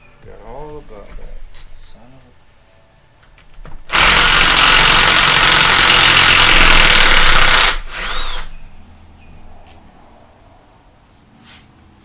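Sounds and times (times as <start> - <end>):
power tool running: 3.8 - 8.6
power tool whine: 3.9 - 8.6.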